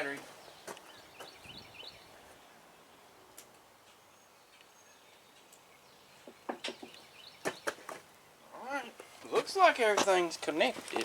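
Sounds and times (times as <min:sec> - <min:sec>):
faint outdoor background hiss: 0:00.0 - 0:11.0.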